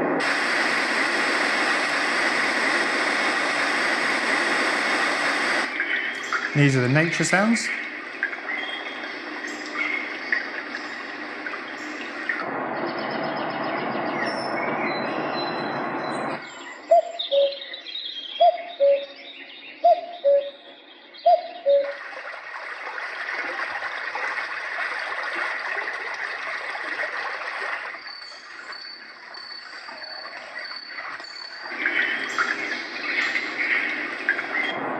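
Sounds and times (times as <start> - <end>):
high pulsing chirp: 8.5 - 21.8.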